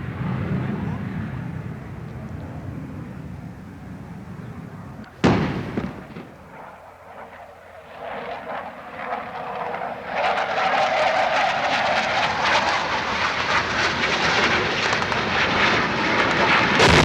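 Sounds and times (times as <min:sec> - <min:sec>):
explosion blast: 0:05.2 - 0:06.5, 0:16.8 - 0:17.0.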